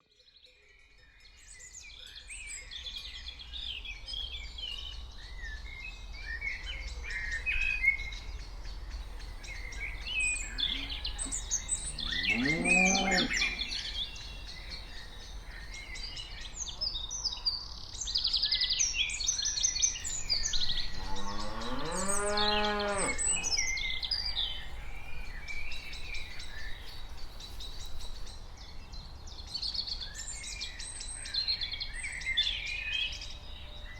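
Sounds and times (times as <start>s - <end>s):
birds chirping: 8.5s - 16.8s, 20.0s - 28.2s
cows mooing: 10.4s - 14.0s, 20.9s - 23.6s.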